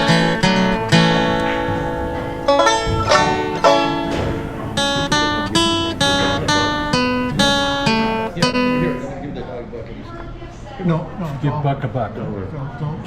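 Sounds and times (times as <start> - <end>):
guitar and banjo picking: 0.0 - 9.1.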